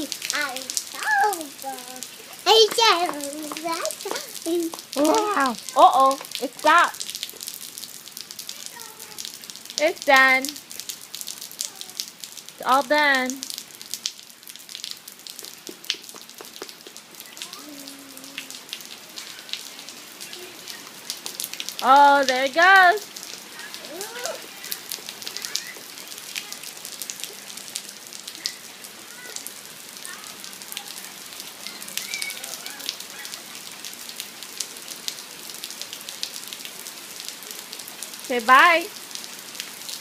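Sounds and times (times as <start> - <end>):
rain dripping: 0.0 - 40.0
faint voice: 17.2 - 18.6, 19.2 - 21.0, 23.5 - 26.8.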